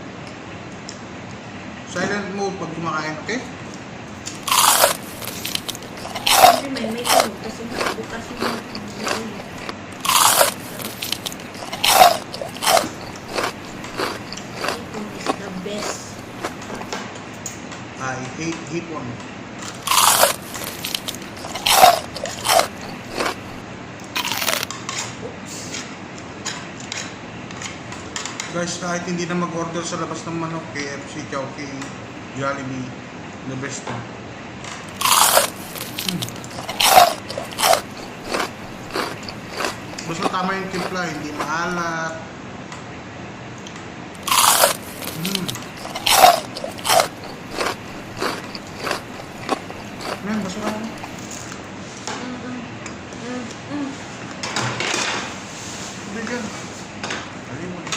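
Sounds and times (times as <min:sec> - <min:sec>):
crunchy chewing of fried chicken: 0:04.3 - 0:17.0, 0:19.6 - 0:24.8, 0:34.9 - 0:42.0, 0:44.2 - 0:51.6.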